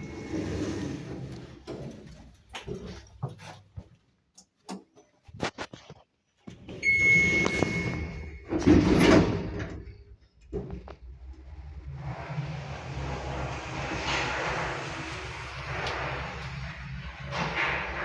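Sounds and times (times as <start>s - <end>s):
lift doors sliding: 0.0s - 3.0s, 6.6s - 18.0s.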